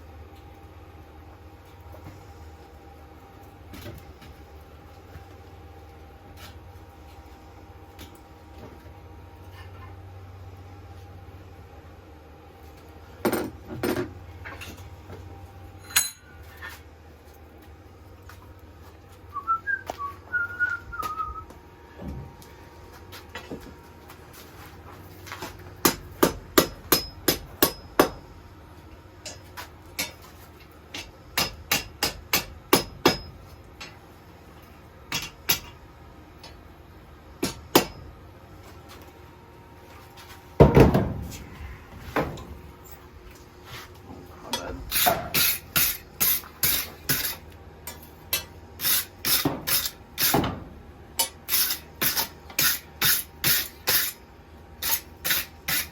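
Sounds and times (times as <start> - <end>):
hammer striking steel on anvil: 15.8 - 16.3, 25.8 - 28.2, 30.0 - 30.2, 30.9 - 34.0, 35.1 - 35.8, 37.4 - 38.1
person whistling: 19.3 - 21.5.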